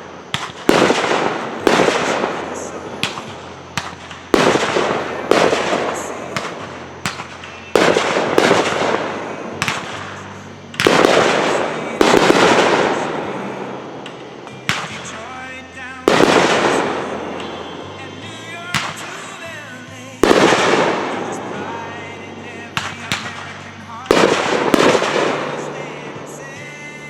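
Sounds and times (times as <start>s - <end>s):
fireworks bursting with echo: 0.0s - 27.0s
small firework pops: 0.3s - 2.4s, 3.0s - 9.0s, 9.6s - 13.0s, 14.0s - 15.3s, 18.7s - 19.2s, 22.8s - 26.5s.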